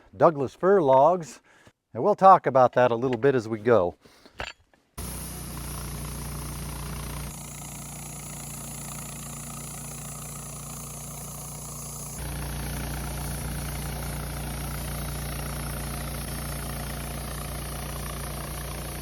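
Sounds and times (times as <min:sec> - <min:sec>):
sawmill engine running: 0:05.0 - 0:19.0.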